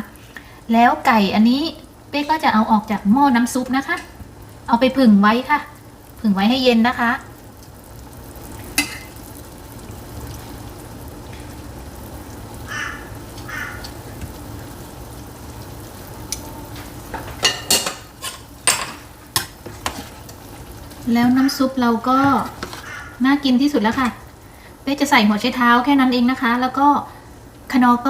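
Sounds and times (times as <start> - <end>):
low hum of pot on stove: 0.0 - 28.0
utensils and dishes clinking: 17.2 - 19.5.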